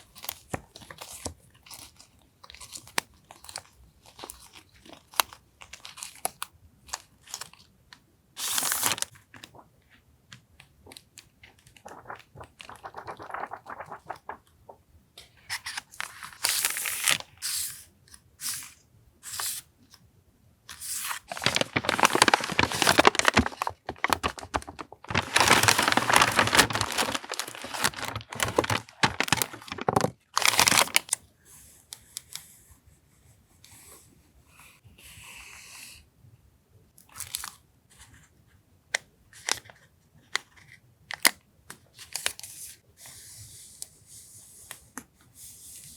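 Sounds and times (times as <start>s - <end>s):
packaging crinkling: 8.4s - 9.6s, 10.9s - 14.8s, 20.8s - 31.2s
paper envelope tearing: 11.5s - 14.8s, 20.8s - 31.2s.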